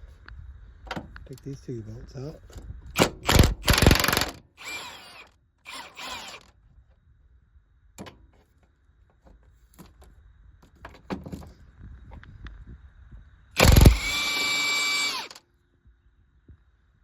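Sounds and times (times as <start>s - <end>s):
power wrench bursts: 3.0s - 6.5s, 13.6s - 15.4s.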